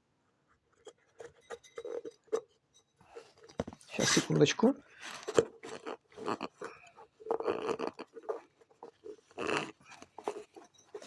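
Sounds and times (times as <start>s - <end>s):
rubber rubbing and squeaking: 3.2s - 11.0s.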